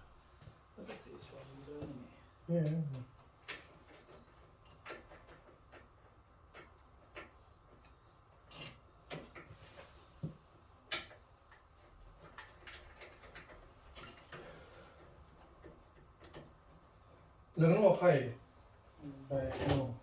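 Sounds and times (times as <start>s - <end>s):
faint background noise: 0.0s - 20.0s
small tools clicking and tapping: 2.6s - 16.8s.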